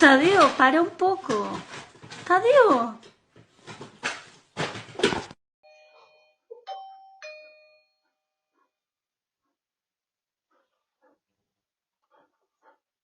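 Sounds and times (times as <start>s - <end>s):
clattering and rustling: 0.0s - 5.4s.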